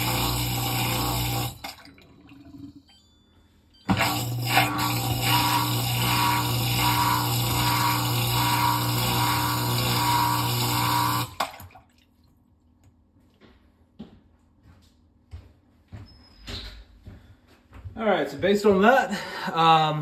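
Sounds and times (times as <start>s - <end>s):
drain pump motor hum: 0.0s - 2.8s, 3.9s - 12.3s.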